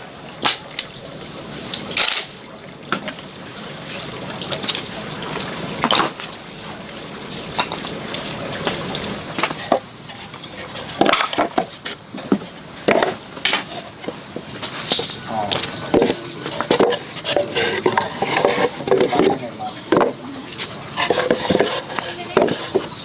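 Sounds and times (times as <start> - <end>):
steady hiss: 0.0 - 23.0
hard objects knocking and clinking: 10.9 - 23.0.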